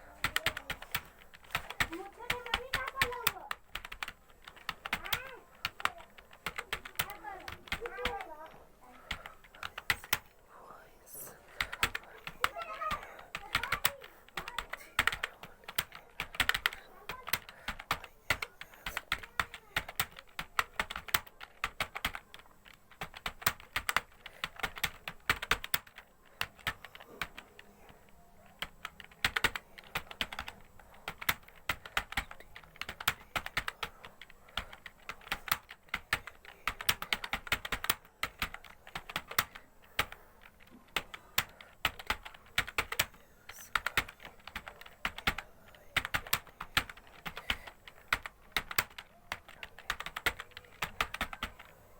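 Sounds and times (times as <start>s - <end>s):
keyboard typing: 0.0s - 51.9s.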